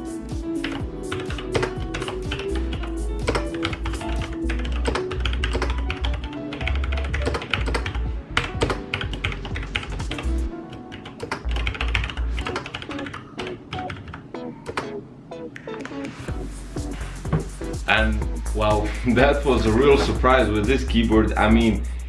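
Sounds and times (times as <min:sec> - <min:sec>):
background music with pulsing bass: 0:00.0 - 0:10.6, 0:15.9 - 0:22.0
mechanical keyboard typing: 0:00.6 - 0:15.0.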